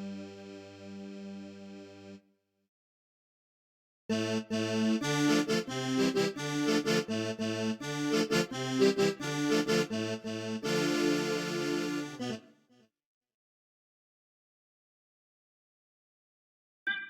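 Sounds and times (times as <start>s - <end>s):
accordion playing rhythmic phrase: 0.0s - 2.2s, 4.1s - 12.5s.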